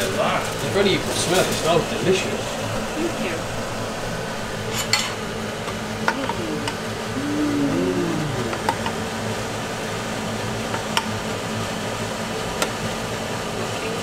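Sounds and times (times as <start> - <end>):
kitchen fan humming: 0.0 - 9.0.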